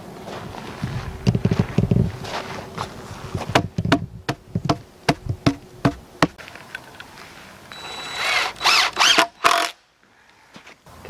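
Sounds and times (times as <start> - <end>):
hammer striking wood: 3.4 - 6.4
cordless drill whirring: 7.7 - 9.8.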